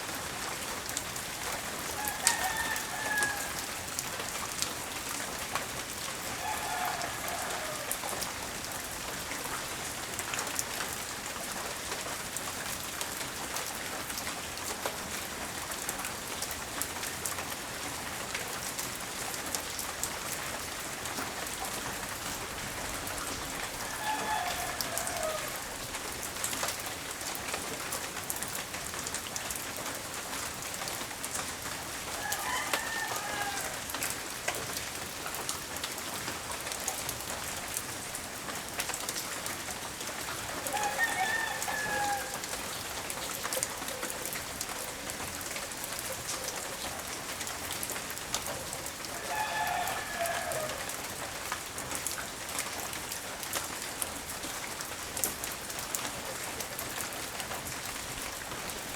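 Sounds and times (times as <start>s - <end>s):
steady rain pattering: 0.0s - 58.9s
rooster crowing: 2.0s - 3.8s, 6.3s - 8.3s, 23.8s - 25.8s, 32.2s - 34.0s, 40.5s - 42.9s, 49.1s - 51.1s.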